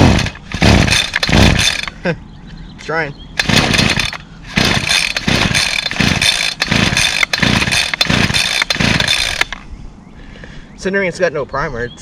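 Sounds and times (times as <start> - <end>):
string trimmer engine surging: 0.0 - 2.1, 3.4 - 9.6.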